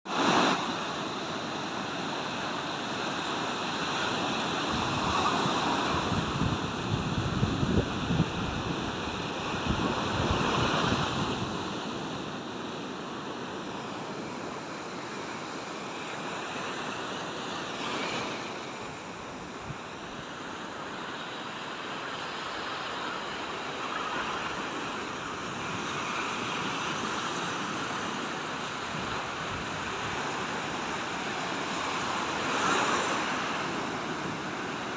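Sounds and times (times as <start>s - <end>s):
sea waves washing on shore: 0.1s - 34.9s
wind gusts on microphone: 1.7s - 14.6s.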